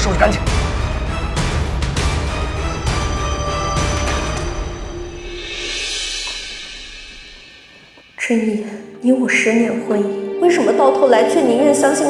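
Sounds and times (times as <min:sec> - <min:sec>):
dramatic score music: 0:00.0 - 0:11.5.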